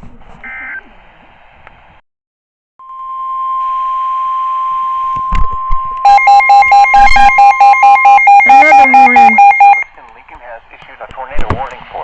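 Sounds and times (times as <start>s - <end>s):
steady alarm tone: 2.8s - 9.9s
two-pitch electronic alarm beeping: 5.3s - 9.9s.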